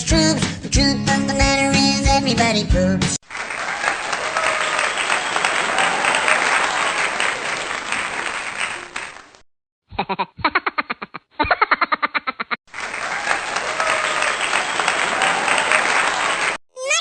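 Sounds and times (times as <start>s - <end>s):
crowd applause and cheering: 3.2s - 9.4s, 12.7s - 17.0s.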